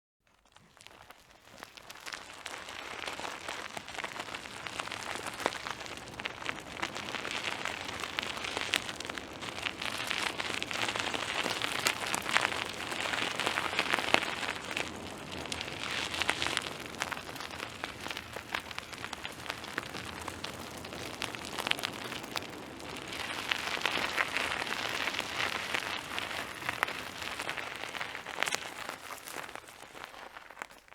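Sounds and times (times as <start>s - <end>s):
bike tyres crunching on gravel: 0.3s - 30.9s.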